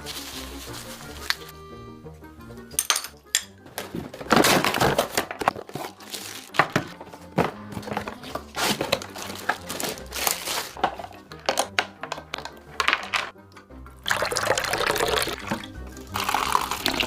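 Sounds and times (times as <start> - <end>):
plastic wrapping crinkling: 0.0 - 1.5, 3.7 - 13.3
faint background music: 0.0 - 17.0.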